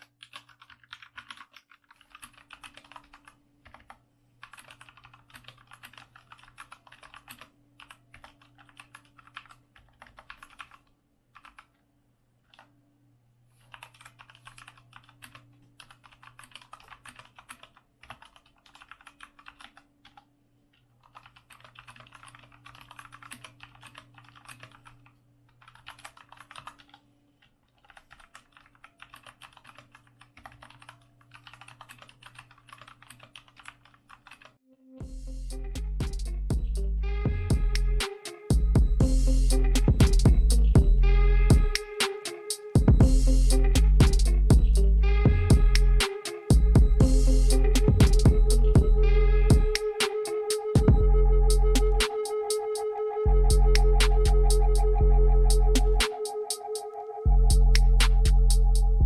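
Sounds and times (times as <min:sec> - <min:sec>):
steady low hum: 0:35.0 - 0:41.8, 0:42.8 - 0:49.7.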